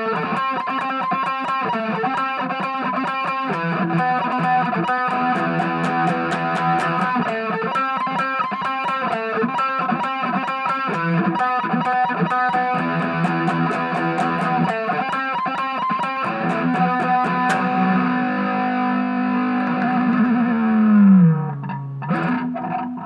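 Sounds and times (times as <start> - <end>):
distorted electric guitar solo: 0.0 - 23.0.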